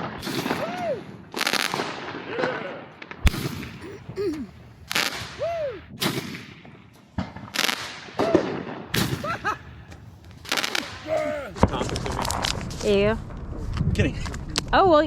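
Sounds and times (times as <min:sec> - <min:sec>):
fireworks bangs: 0:00.0 - 0:03.8, 0:04.9 - 0:12.7
trailing crackle: 0:10.2 - 0:13.5.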